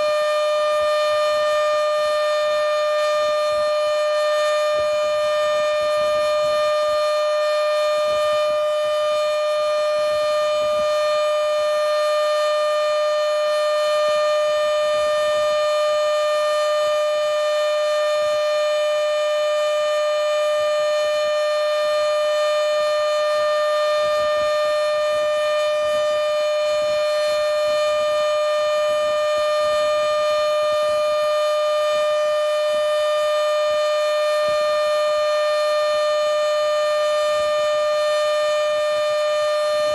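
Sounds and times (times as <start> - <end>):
siren steady tone: 0.0 - 39.9.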